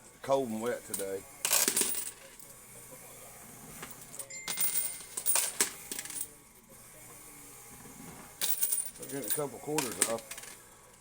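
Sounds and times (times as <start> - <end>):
coins clinking: 0.6 - 2.4, 3.8 - 6.4, 8.4 - 10.6.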